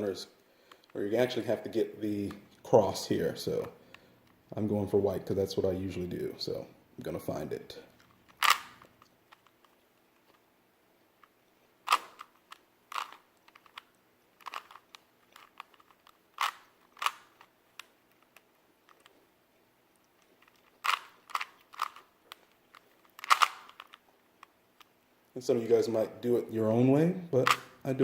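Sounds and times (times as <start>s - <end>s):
puzzle cube clicking: 8.0s - 10.4s, 11.2s - 19.2s, 19.9s - 25.0s, 27.4s - 27.8s.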